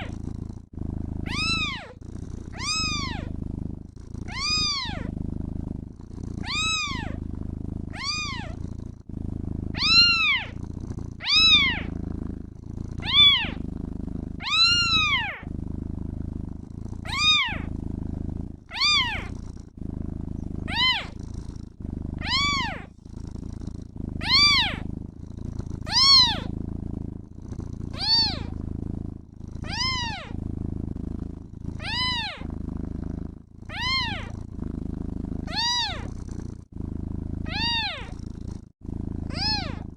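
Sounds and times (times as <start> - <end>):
cat purring: 0.0 - 39.9
kitten meowing: 1.3 - 2.0, 2.6 - 3.3, 4.3 - 5.1, 6.4 - 7.2, 8.0 - 8.6, 9.8 - 10.5, 11.2 - 11.9, 13.0 - 13.6, 14.4 - 15.5, 17.0 - 17.7, 18.7 - 19.3, 20.7 - 21.2, 22.2 - 22.9, 24.2 - 24.9, 25.9 - 26.5, 28.0 - 28.5, 29.6 - 30.4, 31.8 - 32.5, 33.7 - 34.3, 35.5 - 36.1, 37.5 - 38.1, 39.3 - 39.8.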